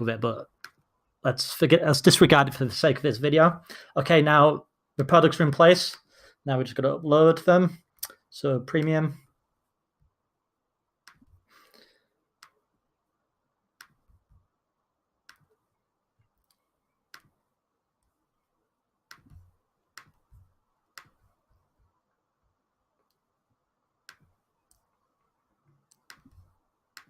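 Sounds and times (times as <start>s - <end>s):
computer mouse clicking: 11.0s - 11.4s, 15.3s - 15.6s, 16.4s - 17.4s, 19.1s - 20.3s, 20.9s - 21.3s, 24.0s - 24.9s, 25.7s - 27.0s.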